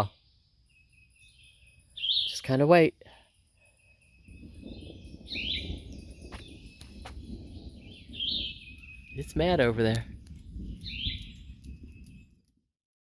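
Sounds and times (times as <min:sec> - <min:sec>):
insects droning: 0:00.0 - 0:12.2
birds chirping: 0:00.0 - 0:12.4
distant thunder rumble: 0:04.2 - 0:12.4.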